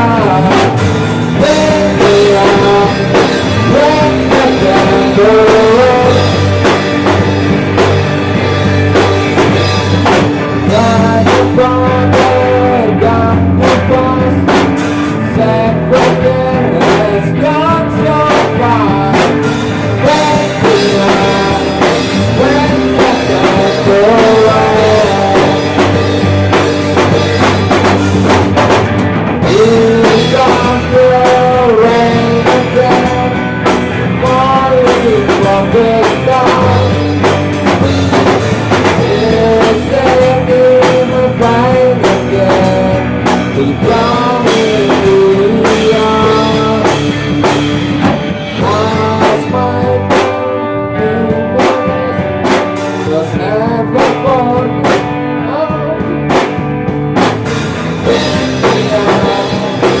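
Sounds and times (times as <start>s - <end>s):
bending lead melody line: 0.0s - 60.0s
drum kit: 0.0s - 60.0s
guitar: 0.0s - 60.0s
rock band playing: 0.0s - 60.0s.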